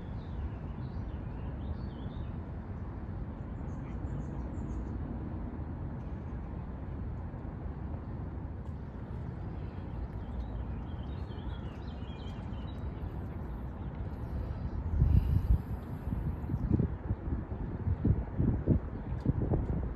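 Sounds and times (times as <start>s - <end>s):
low outdoor rumble: 2.4s - 19.9s.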